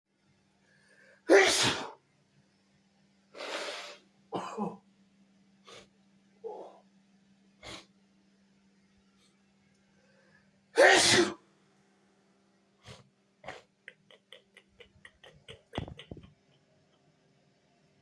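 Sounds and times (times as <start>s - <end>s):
person sneezing: 1.3s - 2.0s, 10.8s - 11.4s
person sniffing: 3.4s - 4.0s.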